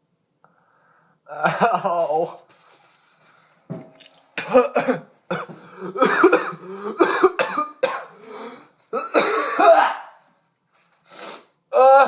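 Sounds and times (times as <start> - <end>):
man coughing: 1.3 - 2.4, 4.4 - 8.2, 9.0 - 10.2.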